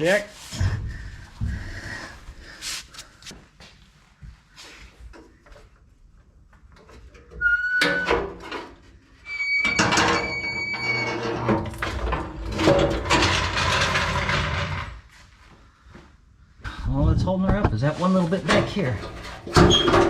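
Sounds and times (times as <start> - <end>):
scraping and rattling: 10.9 - 15.1, 17.8 - 20.0.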